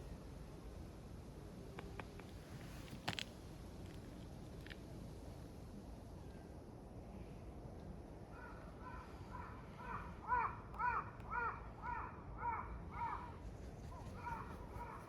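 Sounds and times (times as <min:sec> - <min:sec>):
crow cawing: 0:08.8 - 0:13.3.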